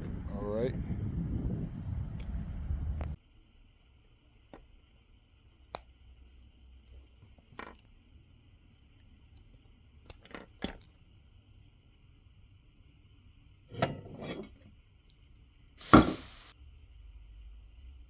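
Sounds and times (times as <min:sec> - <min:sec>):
rattling knocks: 0:15.8 - 0:16.5
sharp loud knock: 0:15.8 - 0:16.5.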